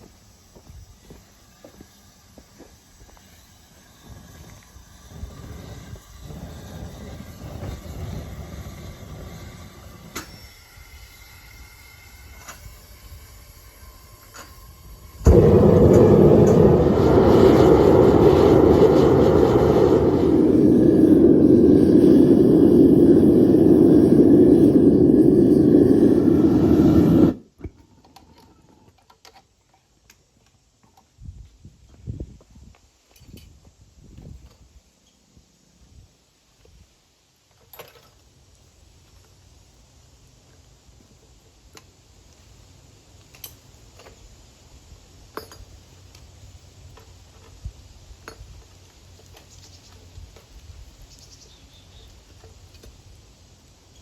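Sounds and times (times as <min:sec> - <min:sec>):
furnace burner roaring: 0:02.4 - 0:27.7
low steady rumble: 0:12.2 - 0:27.6.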